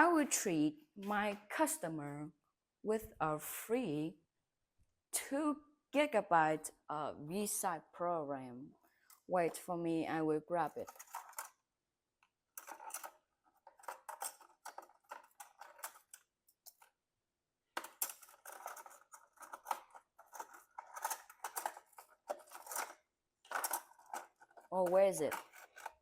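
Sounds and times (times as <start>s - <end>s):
rustling of handled objects: 10.7s - 11.6s, 12.5s - 17.0s, 17.8s - 26.0s.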